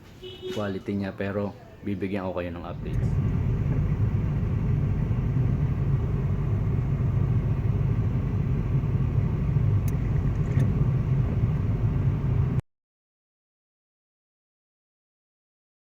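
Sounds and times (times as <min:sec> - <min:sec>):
motor vehicle rumbling: 0:01.6 - 0:12.6.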